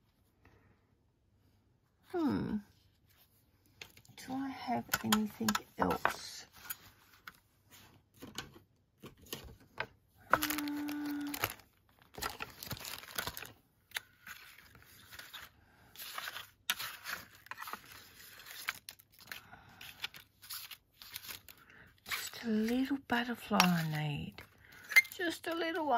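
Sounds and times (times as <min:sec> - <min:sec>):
rummaging clattering and rustling: 0:04.8 - 0:13.6, 0:14.2 - 0:19.4.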